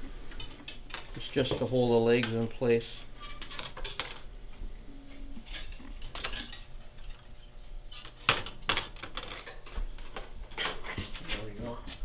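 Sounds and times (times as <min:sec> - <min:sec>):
steel wire clicking and clinking: 0:00.4 - 0:04.3, 0:07.9 - 0:10.2.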